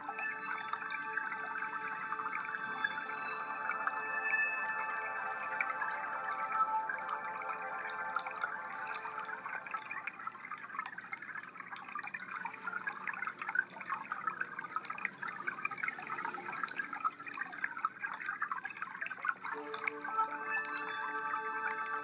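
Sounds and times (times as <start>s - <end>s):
drone music tones: 0.0s - 10.0s
aquarium water trickling and bubbling: 0.0s - 22.0s.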